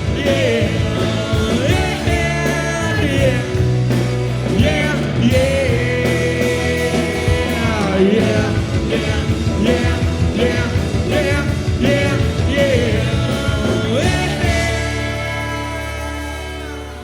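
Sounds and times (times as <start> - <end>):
live rock band playing: 0.0 - 17.0.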